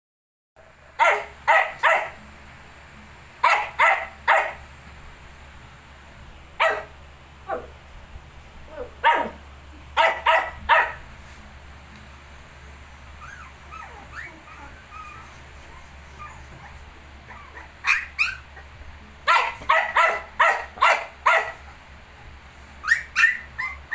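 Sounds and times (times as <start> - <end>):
small dog barking: 1.0 - 2.2, 3.4 - 4.7, 6.6 - 7.7, 8.7 - 9.4, 10.0 - 11.0, 13.2 - 21.8, 22.8 - 23.9
low hum: 2.1 - 23.9.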